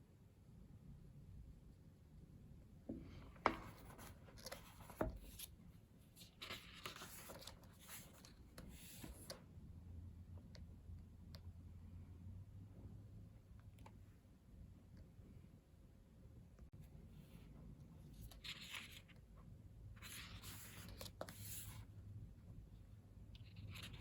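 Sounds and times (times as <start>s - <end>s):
paper pages sliding and rustling: 6.2s - 9.3s, 20.0s - 21.9s.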